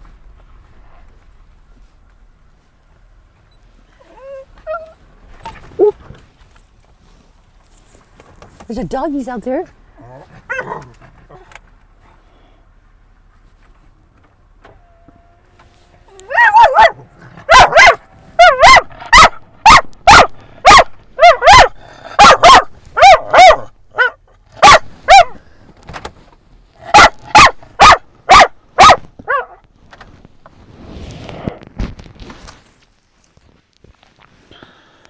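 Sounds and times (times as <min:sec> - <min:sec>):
dog barking loudly: 0:16.3 - 0:25.4, 0:26.8 - 0:29.6.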